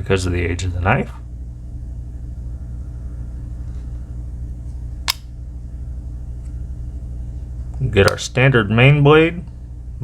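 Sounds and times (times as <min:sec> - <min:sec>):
low room hum: 0:00.0 - 0:10.0
knife tool snapping shut: 0:05.1 - 0:05.3.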